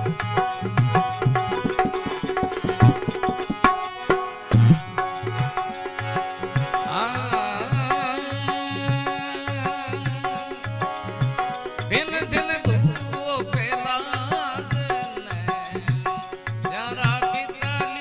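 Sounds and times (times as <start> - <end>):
lead melody with vibrato: 0.0 - 13.5
hand drum rhythm: 0.0 - 18.0
instrumental melody: 0.0 - 18.0.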